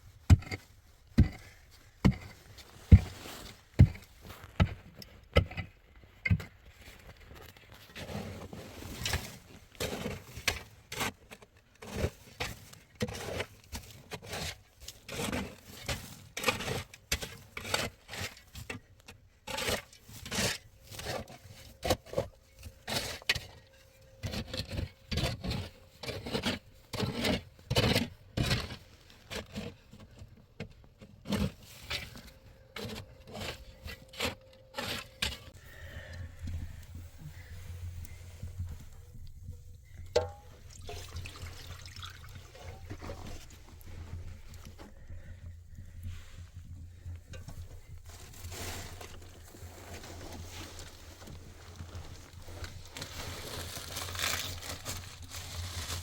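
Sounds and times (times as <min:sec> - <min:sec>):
hand tool scraping and knocking: 0:19.5 - 0:40.6.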